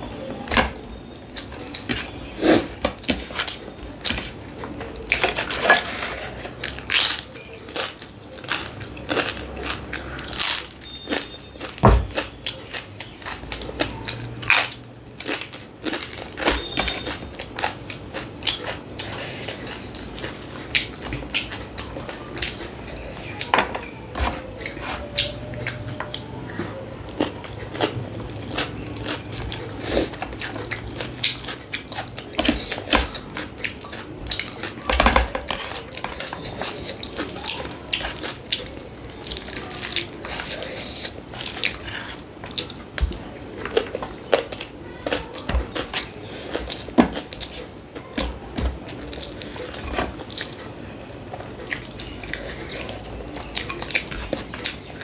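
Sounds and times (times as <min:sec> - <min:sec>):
biting and chewing: 0:01.3 - 0:55.0
dishes clinking: 0:05.2 - 0:06.6.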